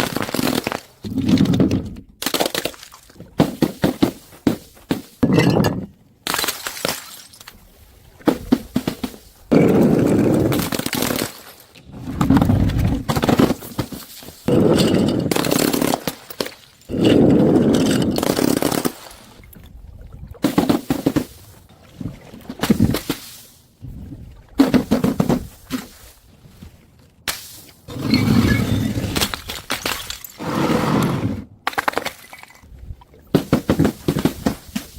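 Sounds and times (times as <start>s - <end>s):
things being smashed and crushed: 28.4s - 30.4s, 31.6s - 32.7s.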